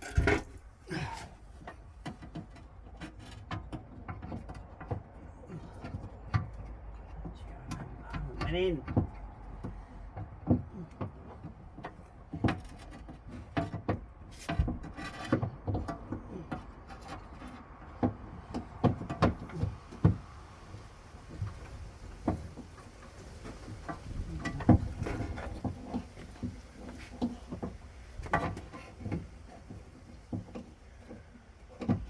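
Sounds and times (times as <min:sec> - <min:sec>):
car door parts clicking and rattling: 0:00.0 - 0:00.7.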